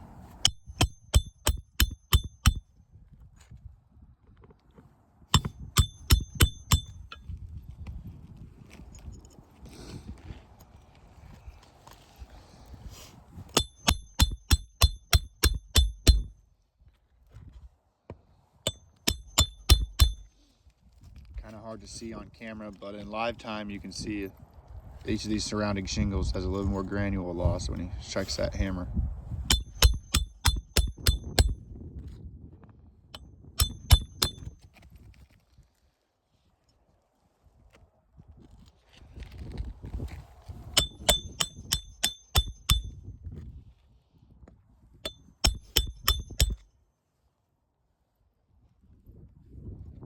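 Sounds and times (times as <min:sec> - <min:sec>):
hammer striking nail: 0:00.4 - 0:02.6, 0:05.4 - 0:07.2, 0:13.5 - 0:16.3, 0:18.7 - 0:20.3, 0:29.5 - 0:31.6, 0:33.6 - 0:34.6, 0:40.8 - 0:43.0, 0:45.1 - 0:46.6.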